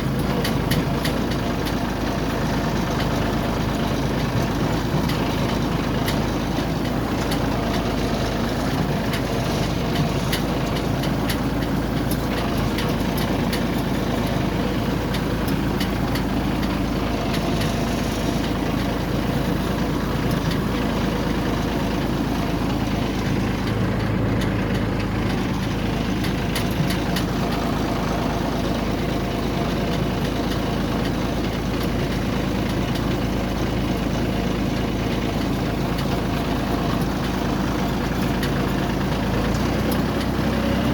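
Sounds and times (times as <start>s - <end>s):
combine harvester engine droning: 0.0s - 40.9s.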